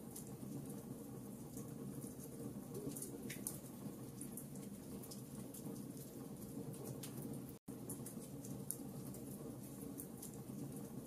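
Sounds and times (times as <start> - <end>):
logs crackling and popping: 0.0 - 11.0
low rumble of fire: 0.0 - 11.0.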